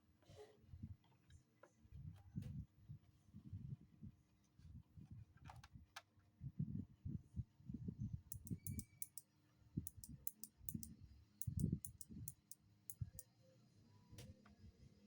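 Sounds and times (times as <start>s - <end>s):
clicky mechanical keyboard typing: 8.3s - 9.2s, 9.9s - 13.2s.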